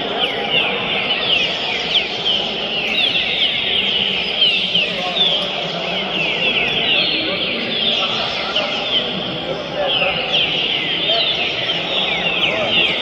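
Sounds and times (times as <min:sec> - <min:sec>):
birds singing whistled phrases: 0:00.0 - 0:09.2.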